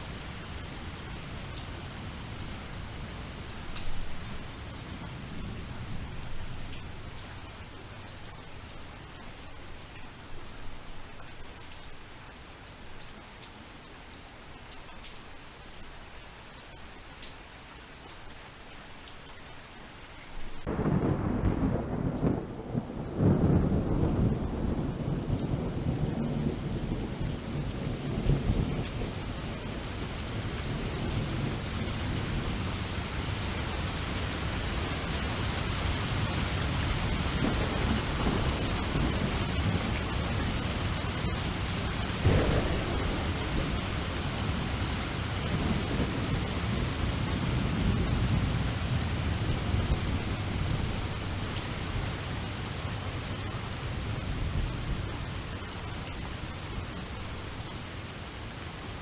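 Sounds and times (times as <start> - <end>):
heavy rain: 0.0 - 59.0
low rolling thunder: 20.6 - 33.1, 36.3 - 52.1
sharp thunder crack: 20.7 - 24.3, 42.2 - 46.4.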